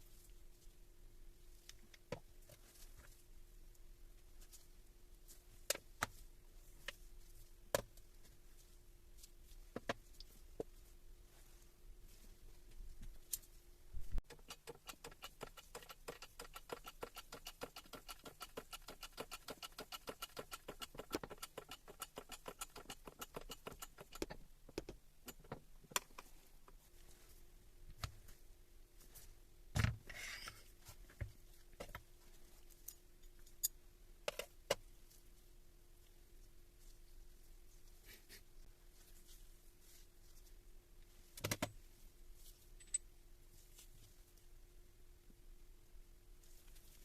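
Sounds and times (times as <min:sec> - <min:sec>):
fast even clicking of hand tool: 0:14.2 - 0:24.4.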